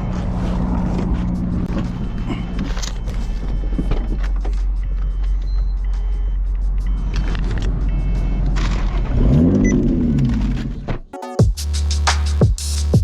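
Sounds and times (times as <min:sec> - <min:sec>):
car engine and road noise: 0:00.0 - 0:11.1
background music: 0:11.1 - 0:13.0.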